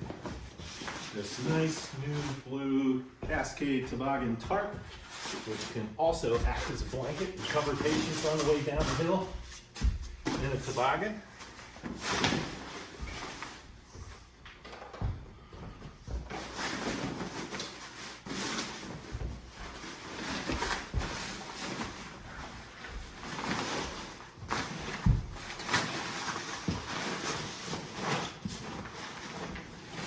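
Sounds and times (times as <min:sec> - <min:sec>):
tarp rustling and crinkling: 0:05.1 - 0:09.3.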